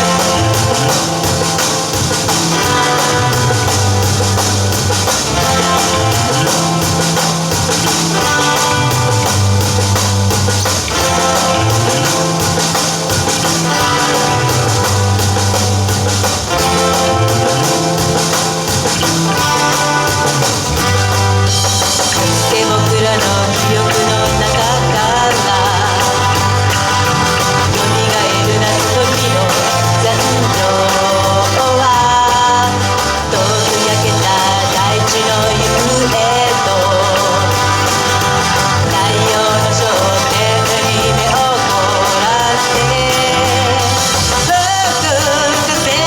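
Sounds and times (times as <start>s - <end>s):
live rock band playing: 0.0s - 46.0s
person singing: 22.0s - 46.0s.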